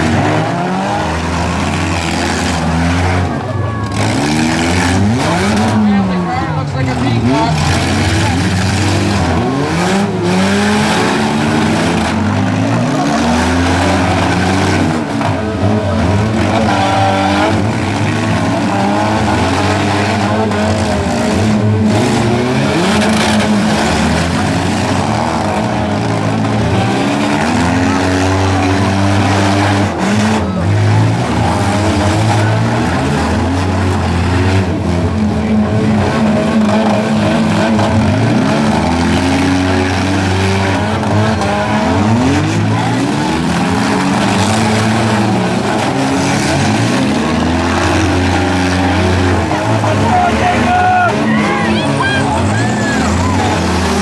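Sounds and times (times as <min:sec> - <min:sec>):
car engines revving hard: 0:00.0 - 0:54.0
cars crashing: 0:00.0 - 0:54.0
tyres squealing: 0:36.4 - 0:54.0.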